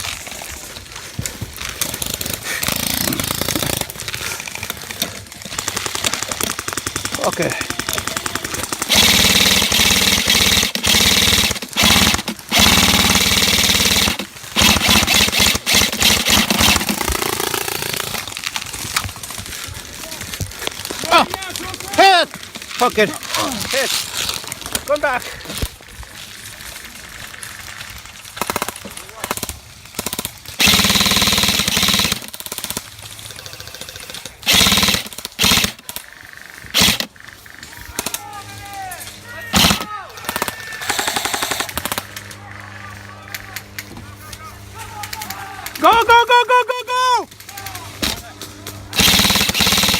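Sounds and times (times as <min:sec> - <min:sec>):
airsoft gun firing full auto: 0:04.8 - 0:18.3, 0:28.4 - 0:37.1, 0:39.5 - 0:42.3, 0:48.9 - 0:49.9.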